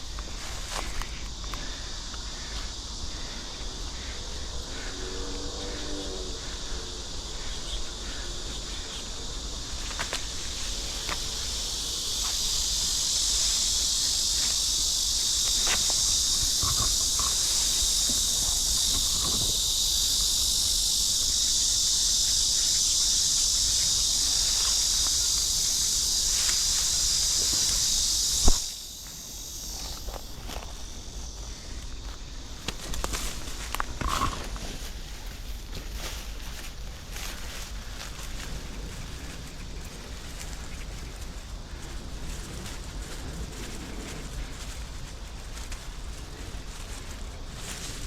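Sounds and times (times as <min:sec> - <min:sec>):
faint rustles and steps: 0:00.0 - 0:03.4, 0:08.4 - 0:48.0
insect buzzing: 0:00.0 - 0:48.0.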